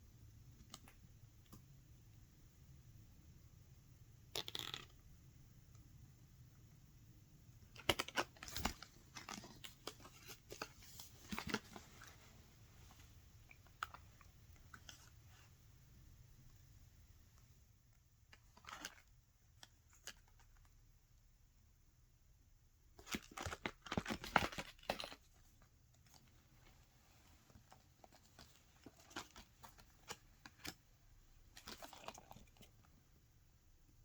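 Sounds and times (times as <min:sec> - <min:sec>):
paper rustling and crinkling: 0:07.8 - 0:13.1, 0:23.0 - 0:30.8, 0:31.5 - 0:32.8.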